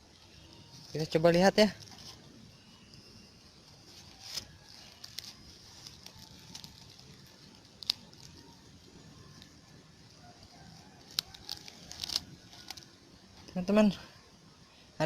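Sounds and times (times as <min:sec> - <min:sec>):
dry plant material rustling: 0:00.0 - 0:14.0.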